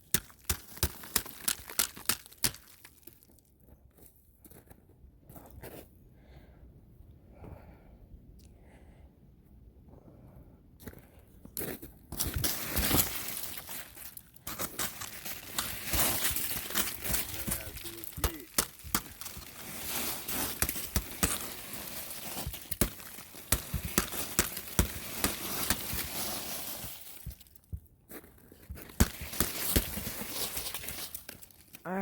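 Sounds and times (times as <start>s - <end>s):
footsteps crunching on icy snow: 0.0s - 4.7s, 11.6s - 27.5s, 28.1s - 31.8s.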